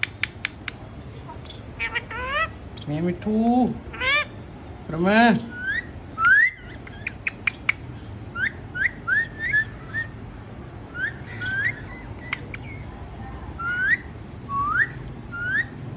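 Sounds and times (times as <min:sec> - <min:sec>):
sharp clicks: 0:00.0 - 0:00.8.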